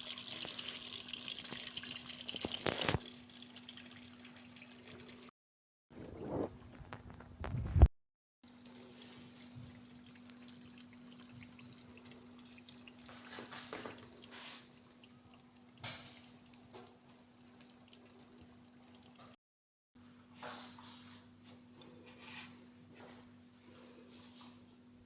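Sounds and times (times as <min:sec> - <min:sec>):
faint liquid dripping: 0:00.0 - 0:05.3, 0:08.5 - 0:19.4.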